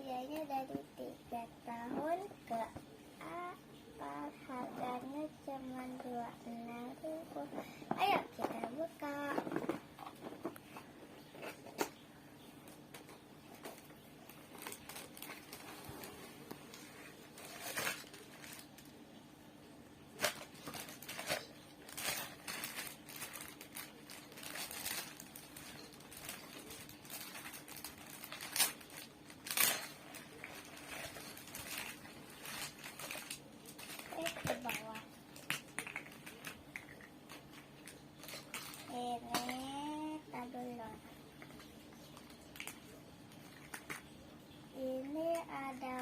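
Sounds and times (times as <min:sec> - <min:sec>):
plastic and cardboard crinkling: 0:04.8 - 0:12.0, 0:12.8 - 0:18.9, 0:20.2 - 0:39.7
packaging tearing: 0:20.2 - 0:34.6.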